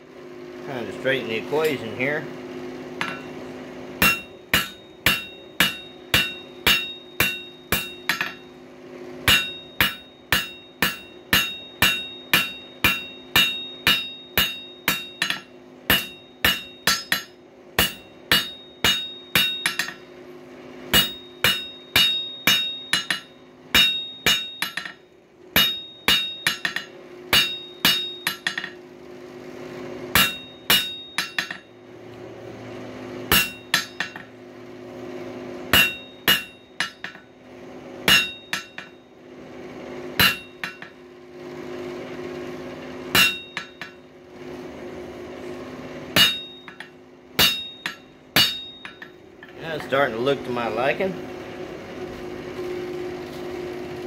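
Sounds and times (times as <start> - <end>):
steady low hum: 0.0 - 54.0
hammer striking steel on anvil: 3.0 - 3.4, 4.0 - 8.6, 9.2 - 20.2, 20.8 - 28.9, 30.1 - 31.8, 33.2 - 34.4, 35.7 - 37.4, 38.0 - 39.1, 40.1 - 41.0, 43.1 - 44.1, 45.4 - 50.8.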